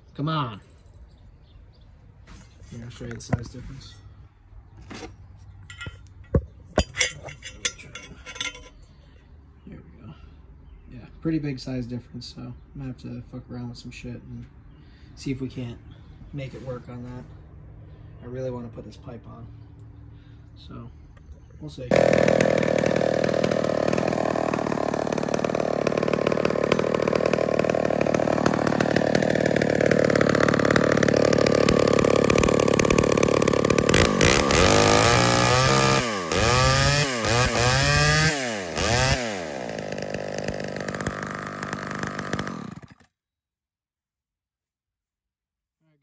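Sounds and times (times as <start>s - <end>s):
chainsaw revving: 21.9s - 43.1s.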